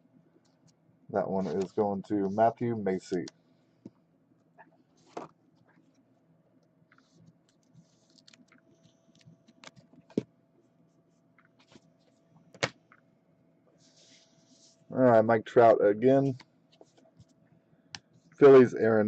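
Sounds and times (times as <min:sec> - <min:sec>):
cards rustling and sliding: 0:07.0 - 0:08.5, 0:11.5 - 0:12.8.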